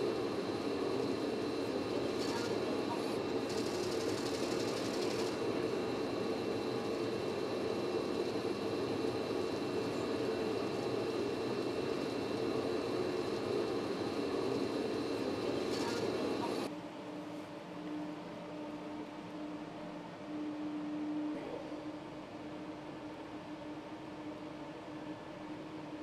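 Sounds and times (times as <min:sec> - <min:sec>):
industrial machinery hum: 0:00.0 - 0:16.7
thin high whines: 0:00.0 - 0:16.7.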